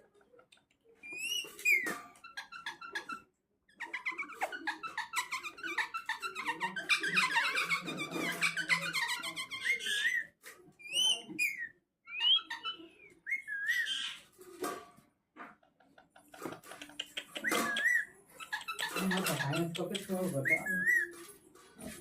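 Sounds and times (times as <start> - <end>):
parrot chattering and whistling: 1.0 - 14.3, 16.4 - 21.2.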